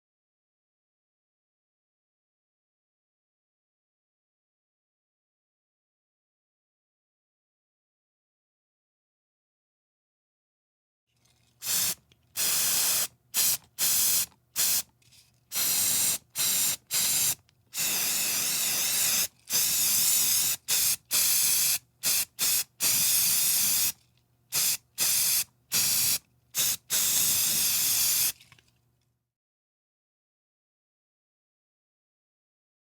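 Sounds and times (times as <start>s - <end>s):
spray paint can hissing: 11.6s - 14.9s, 15.5s - 28.4s.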